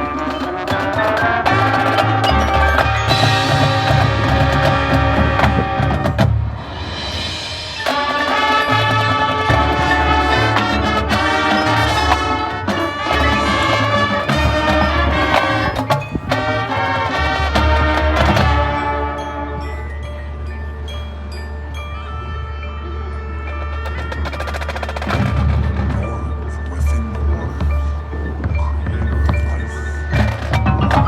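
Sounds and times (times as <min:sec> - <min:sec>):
drums: 0:00.0 - 0:22.6, 0:23.4 - 0:31.0
mallet percussion: 0:00.0 - 0:31.0
marching band music: 0:00.0 - 0:31.0.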